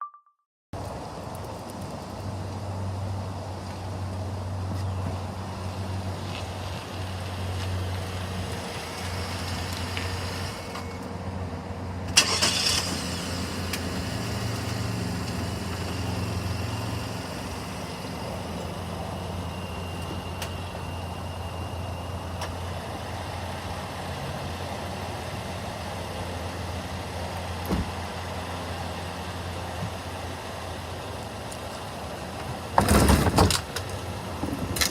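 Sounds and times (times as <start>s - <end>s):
car engine idling: 12.0s - 32.8s.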